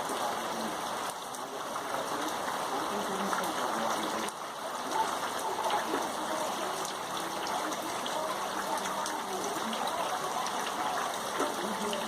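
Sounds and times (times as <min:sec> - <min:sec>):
rain falling: 0:00.0 - 0:12.0
water dripping: 0:00.0 - 0:12.0
water running and trickling: 0:00.0 - 0:12.0.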